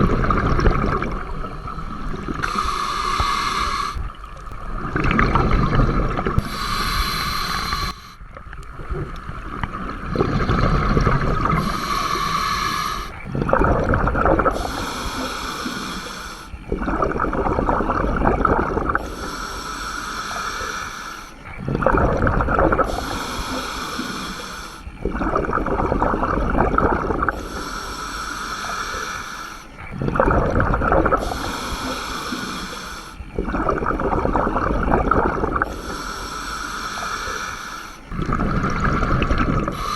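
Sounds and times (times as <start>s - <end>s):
bubbling exhale: 0.0s - 39.9s
hissing regulator inhale: 1.6s - 4.5s, 5.3s - 8.2s, 10.2s - 13.3s, 14.3s - 17.0s, 17.6s - 21.6s, 22.5s - 25.3s, 26.8s - 30.1s, 30.7s - 39.9s.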